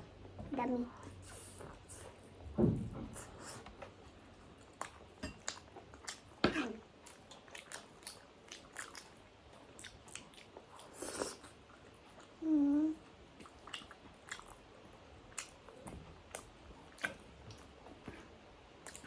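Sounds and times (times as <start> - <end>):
person chewing food: 4.4 - 12.4, 13.3 - 19.0.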